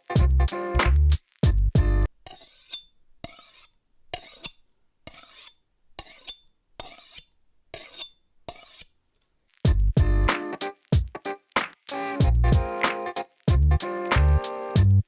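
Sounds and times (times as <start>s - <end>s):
rhythmic scraping strokes: 9.7s - 15.0s.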